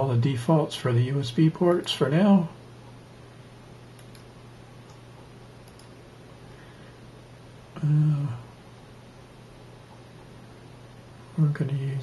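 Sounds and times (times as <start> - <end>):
low room tone hum: 0.0 - 12.0
man humming mm: 7.7 - 8.6.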